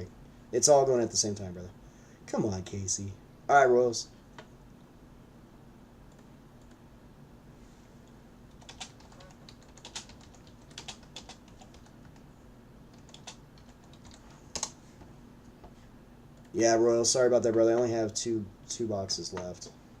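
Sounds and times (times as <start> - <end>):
computer keyboard typing: 8.5 - 12.3, 12.9 - 14.8.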